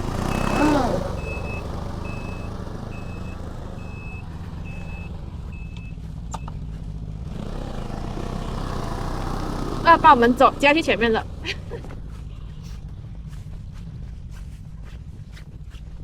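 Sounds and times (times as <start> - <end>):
snowmobile engine idling: 0.0 - 16.0
reverse warning beeper: 0.2 - 6.6.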